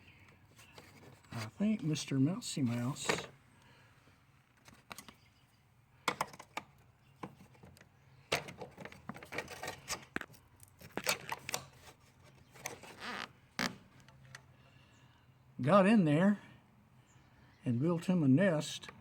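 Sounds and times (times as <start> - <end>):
rustling of handled objects: 0.0 - 2.0.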